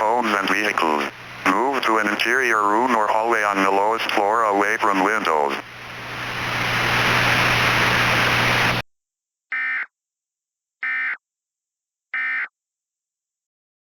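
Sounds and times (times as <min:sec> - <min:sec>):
low hum: 0:00.0 - 0:08.8
steady hiss: 0:00.0 - 0:08.8.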